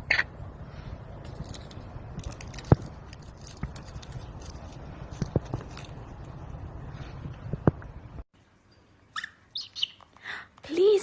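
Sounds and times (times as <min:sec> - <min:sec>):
parrot chirp: 0:09.1 - 0:10.0.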